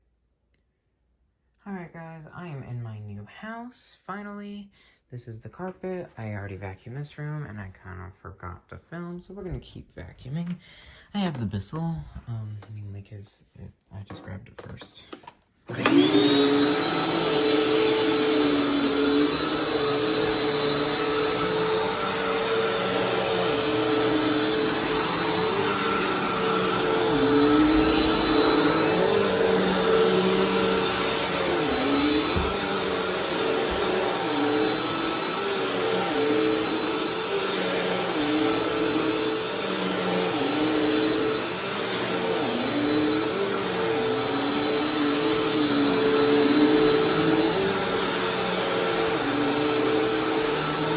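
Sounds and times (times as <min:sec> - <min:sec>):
vacuum cleaner running: 0:14.6 - 0:50.9.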